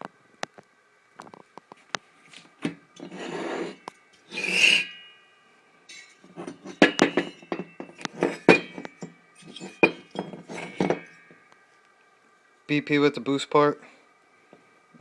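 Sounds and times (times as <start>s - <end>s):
parts scraping on hard surface: 2.3s - 5.1s, 5.9s - 11.4s
metal parts clicking and clinking: 5.9s - 11.4s.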